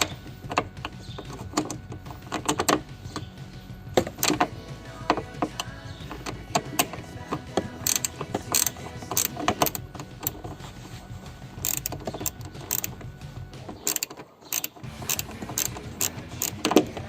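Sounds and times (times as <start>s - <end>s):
ratchet wrench clicking: 4.0s - 10.6s, 11.6s - 17.0s.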